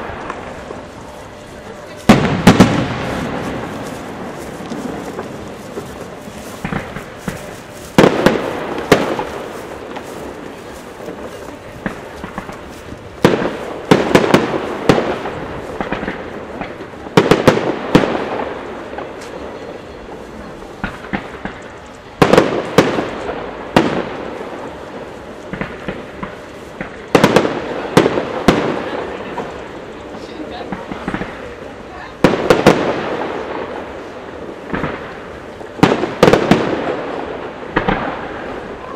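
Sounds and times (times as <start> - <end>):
firework crackle: 0.0 - 38.9
firework shells bursting: 2.1 - 18.3.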